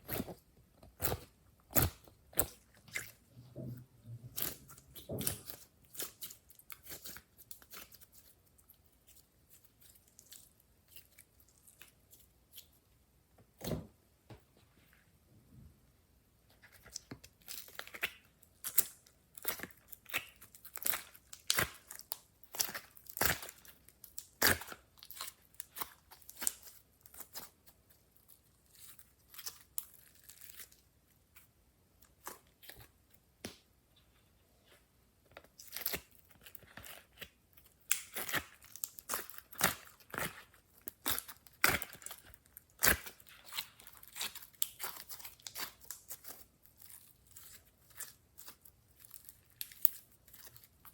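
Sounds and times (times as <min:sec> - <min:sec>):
slime popping and crackling: 0:17.0 - 0:27.5, 0:35.5 - 0:50.9.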